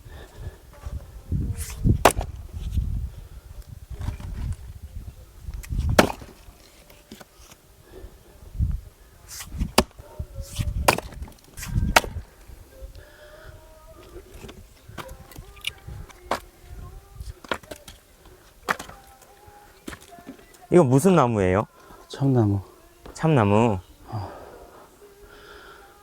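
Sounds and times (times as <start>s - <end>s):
axe splitting firewood: 1.6s - 2.8s, 3.9s - 4.7s, 5.5s - 7.6s, 9.3s - 12.4s, 14.0s - 16.6s, 17.3s - 20.6s.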